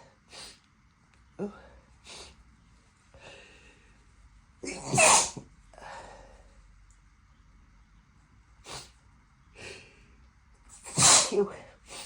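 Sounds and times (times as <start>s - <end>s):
person sneezing: 4.6s - 5.4s, 10.8s - 12.0s.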